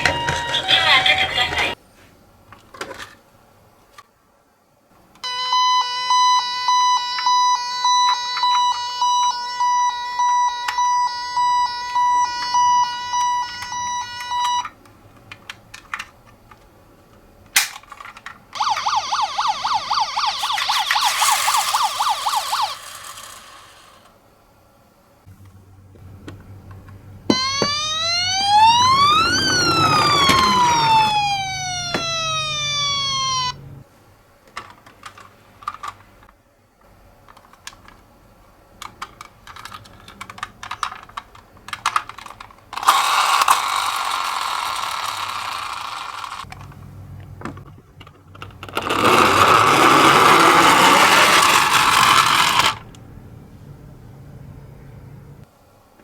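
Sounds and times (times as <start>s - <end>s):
toy electronic siren wail: 0.0s - 1.8s, 5.3s - 14.7s, 18.6s - 23.8s, 27.3s - 33.8s, 42.8s - 46.4s
toy wheels rolling: 17.6s - 24.1s, 27.3s - 33.8s, 38.8s - 46.8s, 48.0s - 53.0s.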